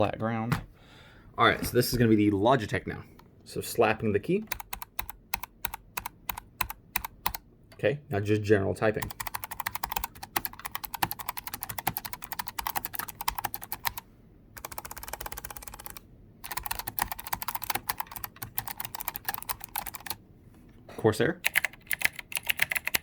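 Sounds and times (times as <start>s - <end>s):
clicky keyboard typing: 4.4s - 7.4s, 9.0s - 14.0s, 14.6s - 20.2s, 21.4s - 23.0s.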